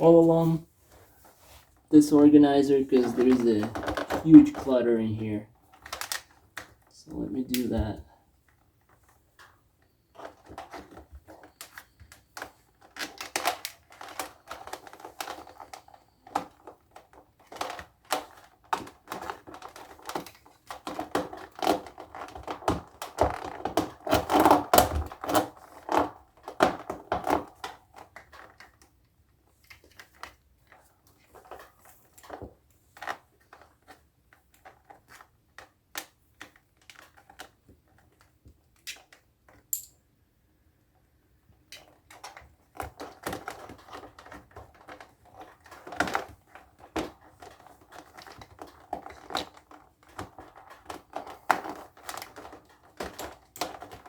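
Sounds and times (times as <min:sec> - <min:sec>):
cables clicking and knocking: 0:01.9 - 0:08.1.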